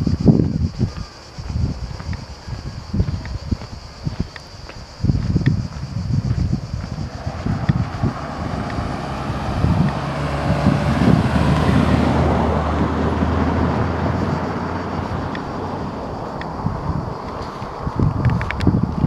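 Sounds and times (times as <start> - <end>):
wind buffeting microphone: 0.0 - 19.0
car driving past: 6.8 - 17.3.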